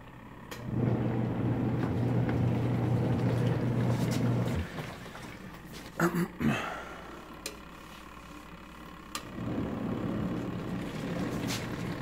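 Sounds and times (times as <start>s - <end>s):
washing machine motor humming: 0.0s - 12.0s.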